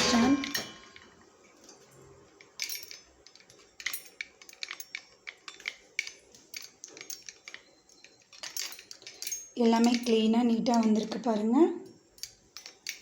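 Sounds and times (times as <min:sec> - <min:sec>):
dishes and cutlery clinking: 0:00.0 - 0:01.2.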